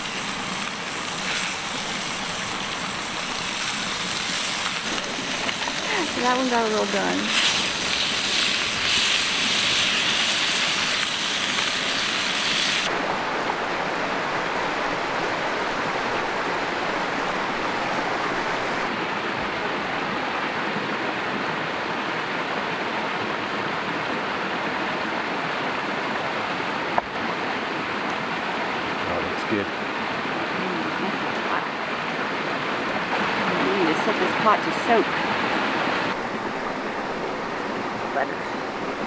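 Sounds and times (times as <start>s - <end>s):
bacon sizzling in a pan: 0.0s - 12.9s
creek running over rocks: 0.0s - 39.0s.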